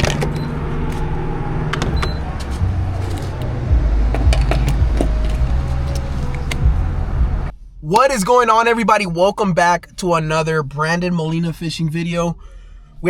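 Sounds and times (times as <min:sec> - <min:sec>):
car engine rumbling: 0:00.0 - 0:13.0
sharp clicks and knocks: 0:01.7 - 0:06.7.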